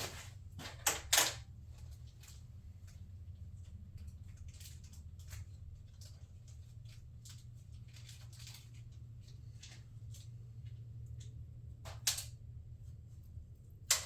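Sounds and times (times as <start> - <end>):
steady low hum: 0.0 - 14.0
small parts clicking and rustling: 3.6 - 12.4.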